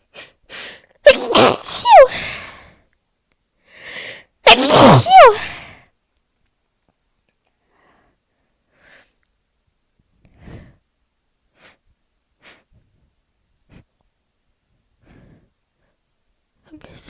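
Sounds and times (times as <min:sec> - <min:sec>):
person breathing and sniffing: 0:10.3 - 0:10.9, 0:11.5 - 0:14.0, 0:15.0 - 0:16.0.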